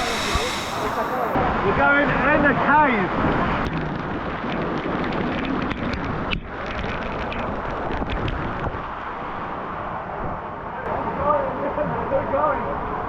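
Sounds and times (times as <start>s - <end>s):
waterfall rushing: 0.0s - 1.4s.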